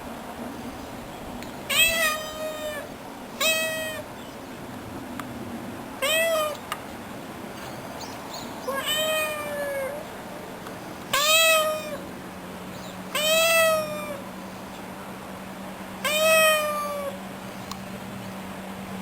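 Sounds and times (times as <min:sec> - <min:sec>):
cat meowing: 0:01.7 - 0:04.3, 0:06.0 - 0:06.7, 0:08.1 - 0:10.1, 0:11.1 - 0:12.1, 0:12.8 - 0:14.3, 0:16.0 - 0:17.2.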